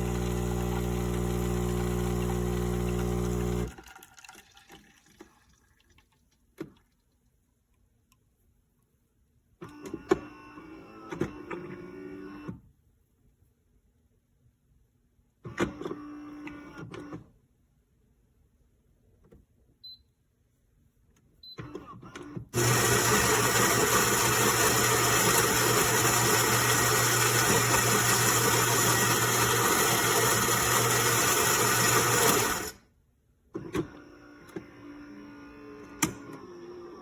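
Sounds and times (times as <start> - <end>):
espresso machine whirring: 0.0 - 3.8, 22.6 - 32.8.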